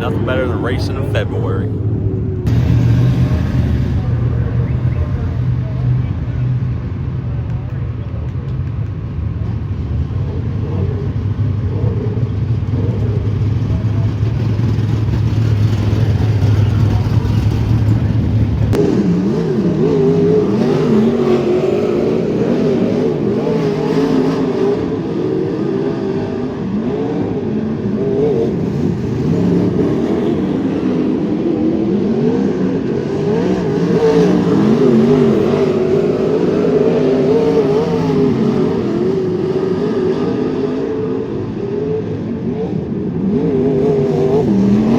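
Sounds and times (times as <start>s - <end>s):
low engine drone: 0.0s - 21.2s
race car engines revving: 0.0s - 44.9s.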